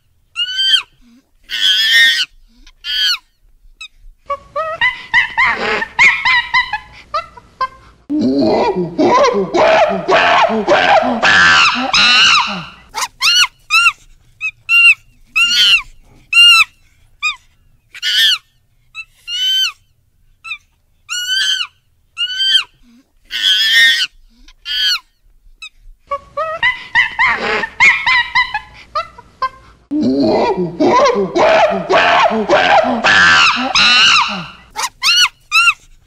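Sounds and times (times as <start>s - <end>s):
monkey calls: 9.0s - 17.4s, 20.4s - 25.0s, 30.3s - 35.8s
monkey chattering: 9.1s - 17.4s.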